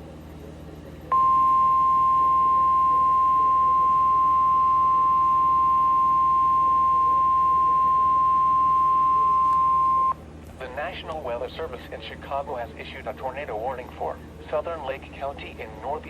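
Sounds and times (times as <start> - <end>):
steady high alarm tone: 1.1 - 10.2.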